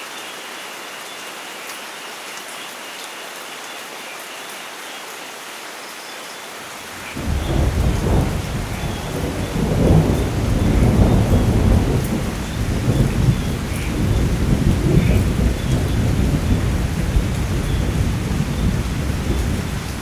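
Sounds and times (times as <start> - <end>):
heavy rain: 0.0 - 20.0
rolling thunder: 7.0 - 20.0.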